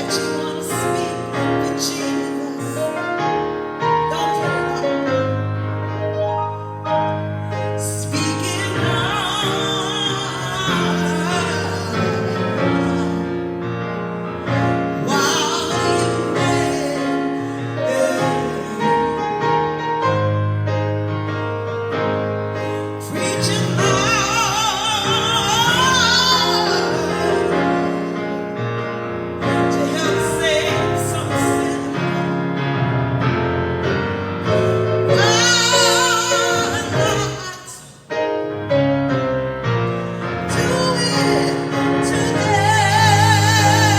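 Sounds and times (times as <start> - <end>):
piano or keyboard: 0.0 - 43.9
woman singing with vibrato: 7.8 - 13.3, 15.0 - 19.3, 23.0 - 28.1, 35.1 - 38.1, 40.4 - 43.9.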